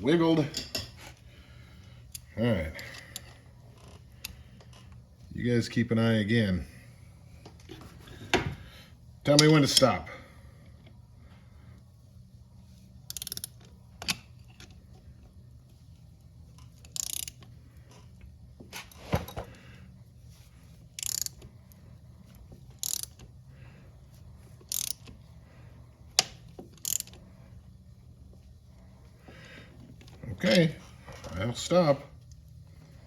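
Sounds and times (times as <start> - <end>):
ratchet wrench clicking: 13.1 - 14.7, 16.6 - 18.0, 20.9 - 23.3, 24.6 - 25.2, 26.1 - 27.2.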